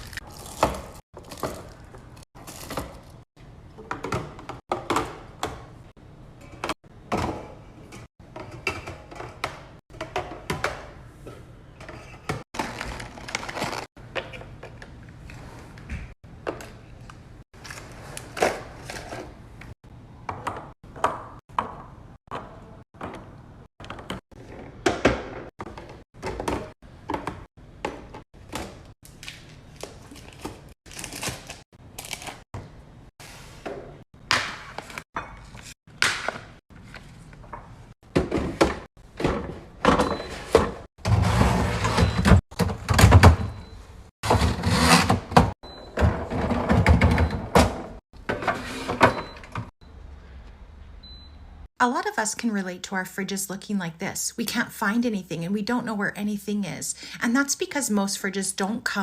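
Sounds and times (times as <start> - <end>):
containers clattering on fridge shelves: 38.1 - 43.6, 44.2 - 49.7.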